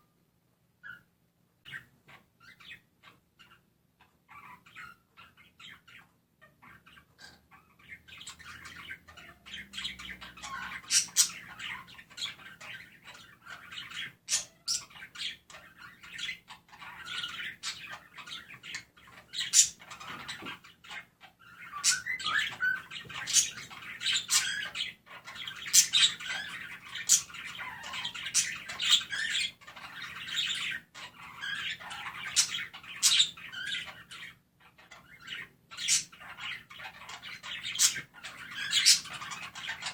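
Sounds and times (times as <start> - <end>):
budgerigars chirping and squawking: 0.8 - 1.1, 1.7 - 39.9.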